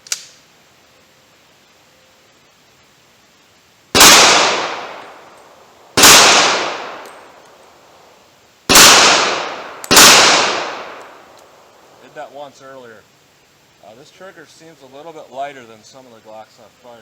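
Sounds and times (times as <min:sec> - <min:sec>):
pistol shots echoing: 0:04.0 - 0:05.4, 0:06.0 - 0:07.5, 0:08.7 - 0:11.6.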